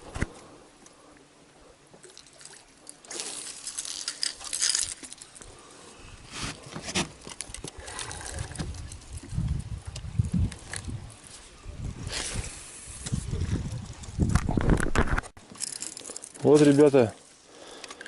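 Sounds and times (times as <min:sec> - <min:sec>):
water splashing: 0:02.0 - 0:05.7
light metallic clinks: 0:15.5 - 0:17.0.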